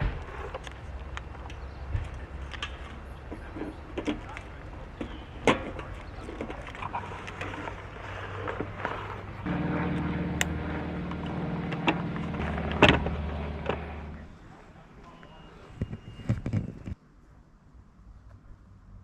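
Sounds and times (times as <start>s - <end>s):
steady motor hum: 7.5s - 14.4s.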